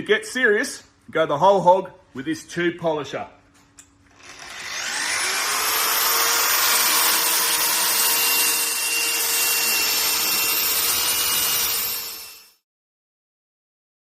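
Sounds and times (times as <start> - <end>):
electric polisher running: 4.1 - 12.6.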